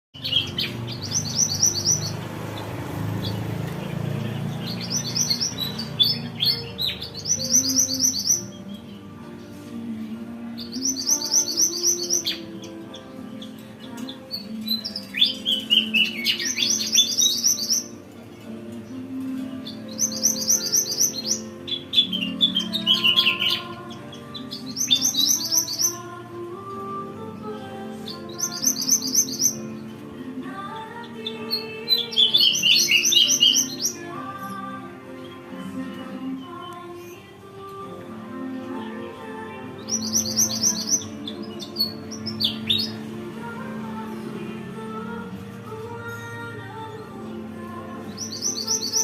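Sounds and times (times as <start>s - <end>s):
songbirds chirping and singing: 0.1s - 49.0s.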